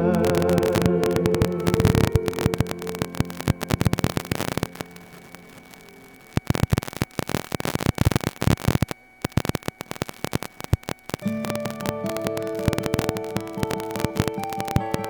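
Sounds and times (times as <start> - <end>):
music: 0.0 - 6.3, 11.2 - 15.0
crackling static: 0.0 - 15.0
faint hiss: 0.0 - 15.0.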